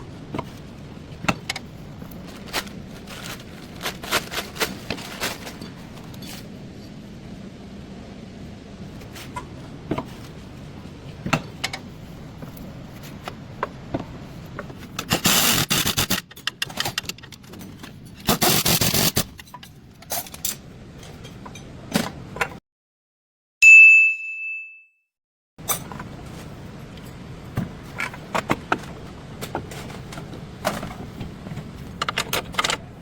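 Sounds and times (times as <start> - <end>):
bright ding: 23.6 - 25.0.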